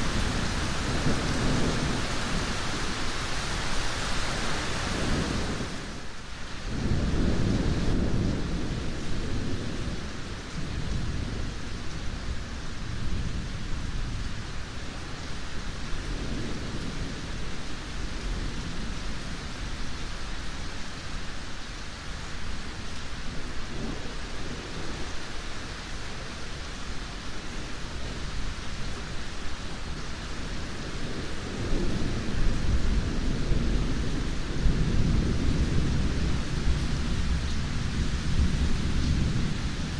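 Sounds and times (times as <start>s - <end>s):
heavy rain: 0.0s - 39.9s
rolling thunder: 6.7s - 11.6s.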